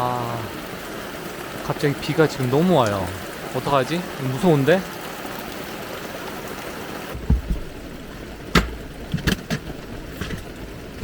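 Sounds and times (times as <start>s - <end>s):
heavy rain hissing: 0.0s - 11.0s
knocks and thumps: 7.2s - 11.0s.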